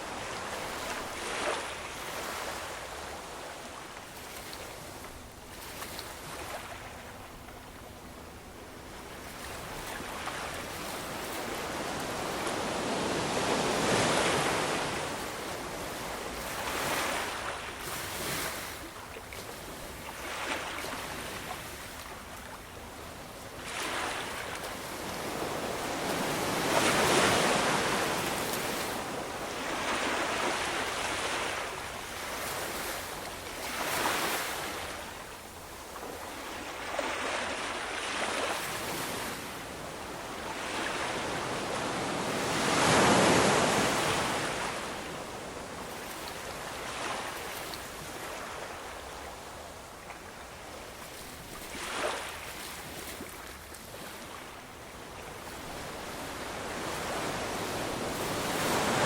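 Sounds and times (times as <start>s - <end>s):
ocean waves breaking: 9.3s - 18.9s, 23.6s - 35.1s, 36.3s - 48.8s, 51.2s - 54.6s, 55.5s - 59.0s.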